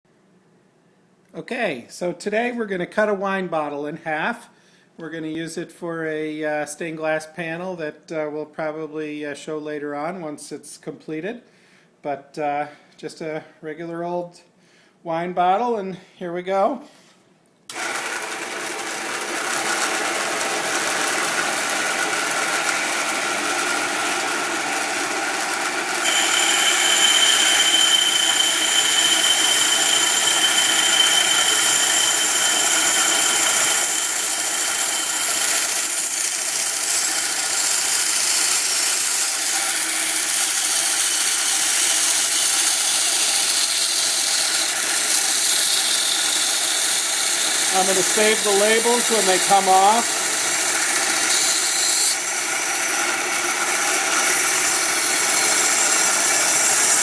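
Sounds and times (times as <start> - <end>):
band saw cutting glass: 18.8 - 57.0.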